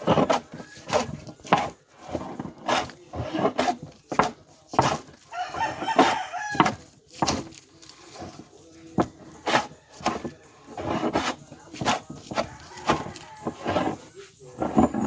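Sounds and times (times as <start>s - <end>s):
wood plane shaving a board: 0.0s - 15.0s.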